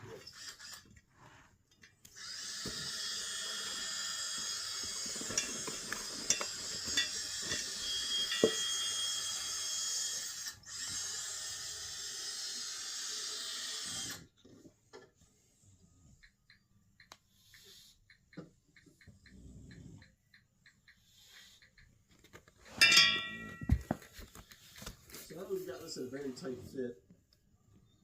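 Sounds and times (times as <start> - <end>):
rotary tool grinding: 0.0 - 1.5, 2.1 - 14.3.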